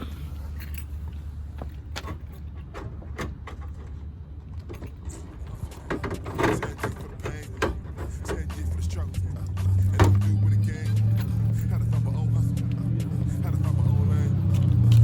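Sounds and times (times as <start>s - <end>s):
scraping rustle: 0.0s - 10.2s
steady low hum: 0.0s - 15.0s
clicks and knocks of tools: 0.5s - 8.7s.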